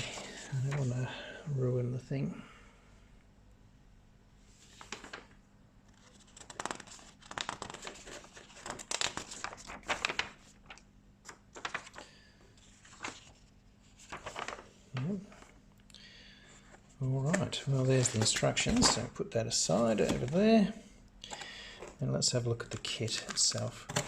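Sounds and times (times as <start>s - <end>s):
paper rustling and crinkling: 4.6s - 15.6s, 16.6s - 20.7s, 21.3s - 24.0s.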